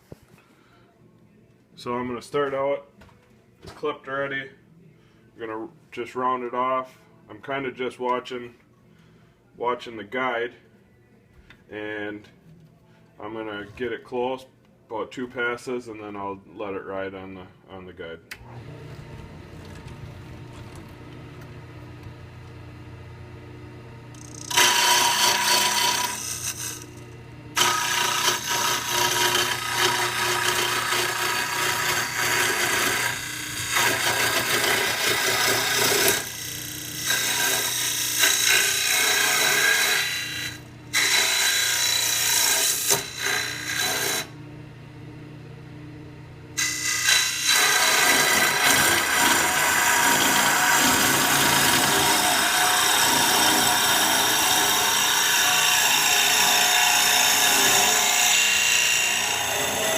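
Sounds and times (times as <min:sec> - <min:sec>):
lathe motor hum: 0:18.4 - 0:44.4, 0:46.6 - 0:59.9
cutter shaving wood: 0:24.2 - 0:44.4, 0:46.6 - 0:59.9.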